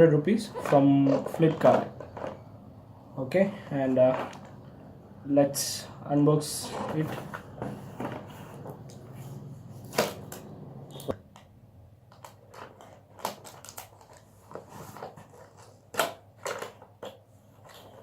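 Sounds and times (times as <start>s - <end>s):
clicks taps and crinkles: 9.9s - 18.0s
packaging being opened and handled: 12.1s - 18.0s.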